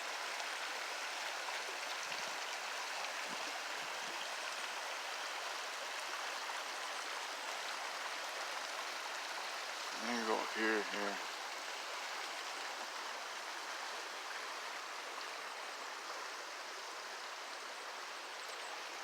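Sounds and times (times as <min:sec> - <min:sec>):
river water and waterfall rushing: 0:05.2 - 0:17.3.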